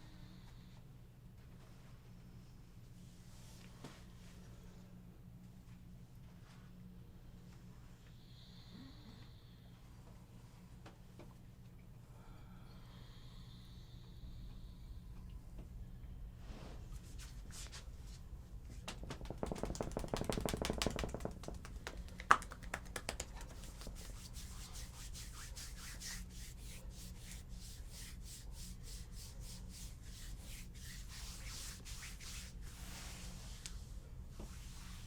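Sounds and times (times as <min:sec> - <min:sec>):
hands rubbing skin: 0:18.7 - 0:33.8.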